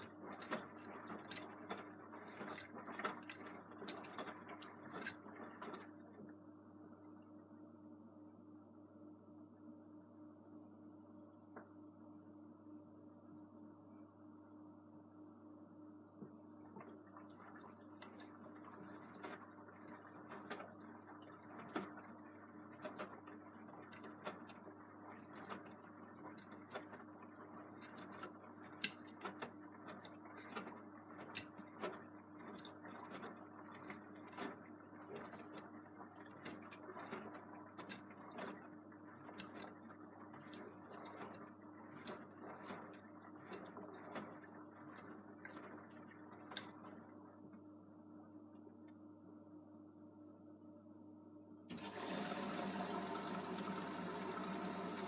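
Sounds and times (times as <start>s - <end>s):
washing machine humming: 0.0s - 55.0s.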